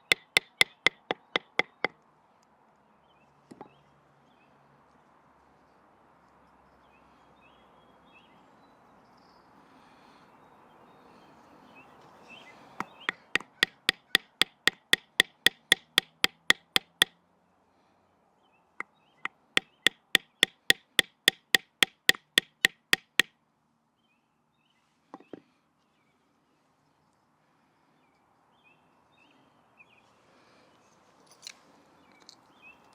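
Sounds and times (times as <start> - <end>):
wooden baton knocking on knife: 0.0 - 1.9, 13.0 - 17.1, 19.6 - 23.3.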